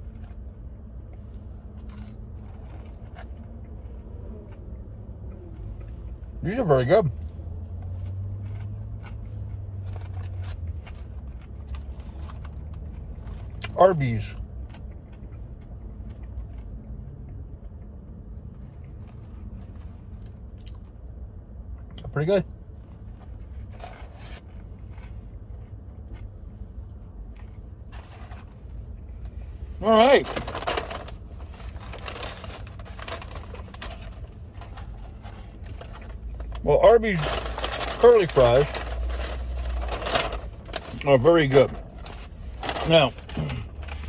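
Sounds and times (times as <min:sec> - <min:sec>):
person eating fries: 0:07.2 - 0:13.8, 0:30.0 - 0:44.0
low hum: 0:24.5 - 0:44.0
low rumble: 0:29.0 - 0:44.0
paper packaging rustling: 0:29.8 - 0:44.0.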